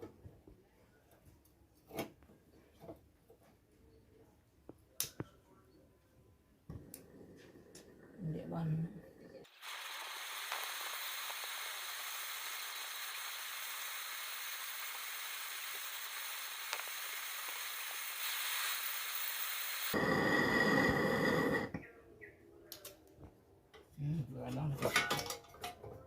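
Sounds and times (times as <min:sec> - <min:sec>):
gas hissing under pressure: 0:09.4 - 0:21.8.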